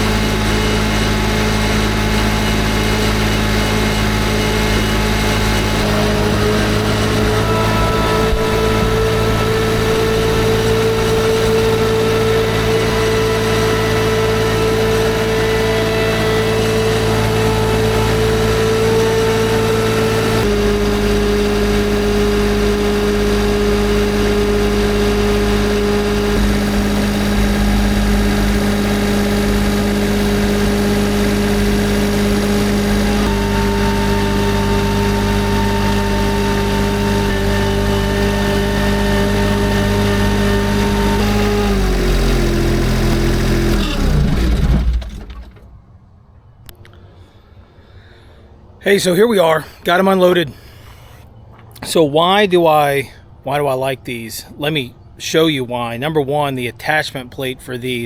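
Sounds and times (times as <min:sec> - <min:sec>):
skid steer engine running: 0:00.0 - 0:46.0.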